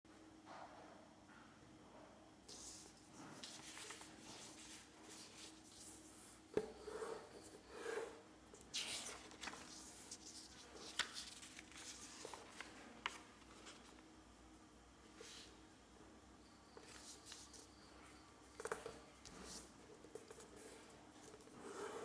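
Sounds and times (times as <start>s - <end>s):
paper rustling and creasing: 2.5s - 6.1s, 8.6s - 14.1s.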